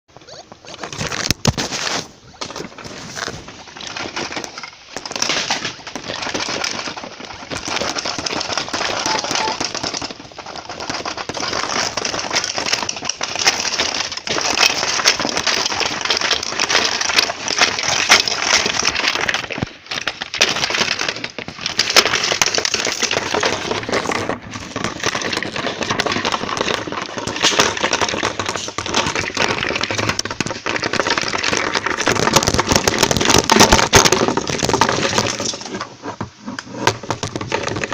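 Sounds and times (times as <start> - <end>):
clatter of shaking objects: 0.2 - 37.9
glass breaking: 8.9 - 9.9.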